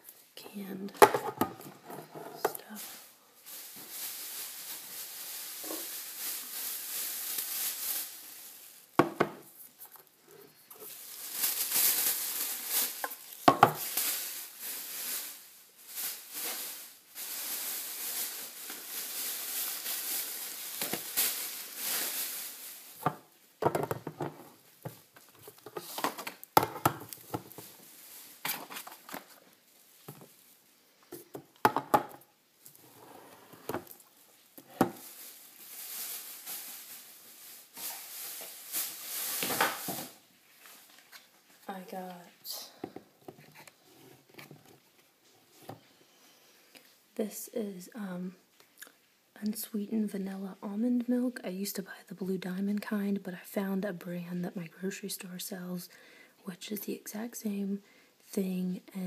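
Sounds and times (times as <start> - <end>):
plastic bags rustling: 0.1 - 47.4
cans and packages set down: 9.0 - 9.5, 12.8 - 14.0, 20.8 - 21.3, 23.0 - 27.8, 28.4 - 29.4, 31.1 - 32.2, 34.6 - 35.1, 37.7 - 40.2.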